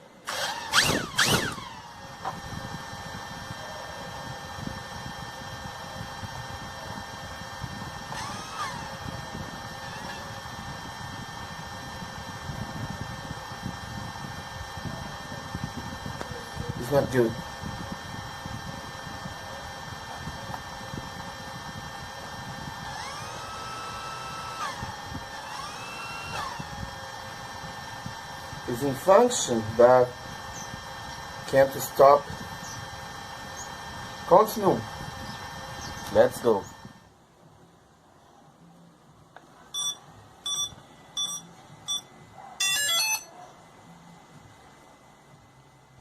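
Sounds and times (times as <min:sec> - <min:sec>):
drone motors whining: 0:00.0 - 0:37.1, 0:39.8 - 0:43.3
steady electrical hum: 0:00.0 - 0:46.0
short electronic beeps: 0:39.8 - 0:43.3
stepping electronic tones: 0:39.8 - 0:43.3.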